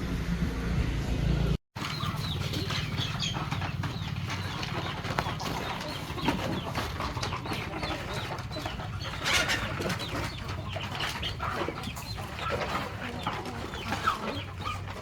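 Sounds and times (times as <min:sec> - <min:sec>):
low hum: 0:00.0 - 0:01.6
birds calling: 0:01.8 - 0:15.0
chickens clucking: 0:01.8 - 0:15.0.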